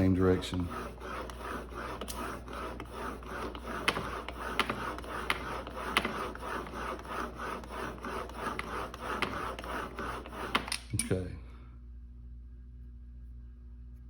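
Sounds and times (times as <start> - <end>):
blade scraping on sandpaper: 0.0 - 10.7.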